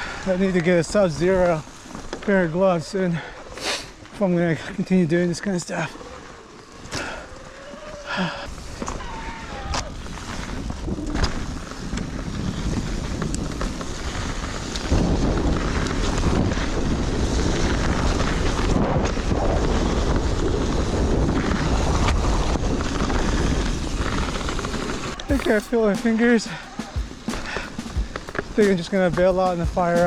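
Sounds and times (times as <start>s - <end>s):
wind buffeting microphone: 8.4s - 30.0s.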